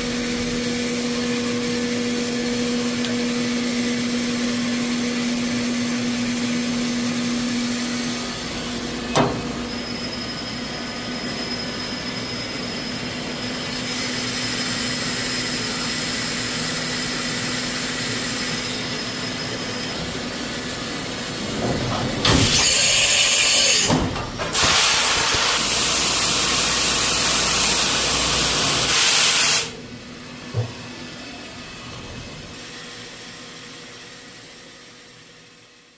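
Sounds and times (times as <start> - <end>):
machine mechanical hum: 0.0 - 29.0, 29.6 - 35.9
loud hiss: 24.6 - 29.8.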